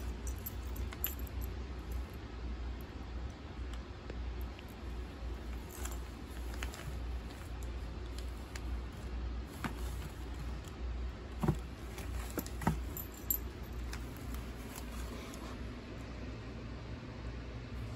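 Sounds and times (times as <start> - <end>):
paper crinkling and rustling: 5.4 - 10.7, 11.3 - 15.6.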